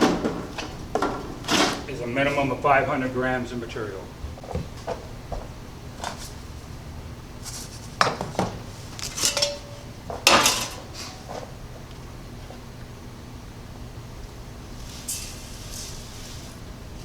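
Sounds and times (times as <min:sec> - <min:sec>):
metal pans clattering: 0:00.0 - 0:02.0, 0:08.0 - 0:11.5.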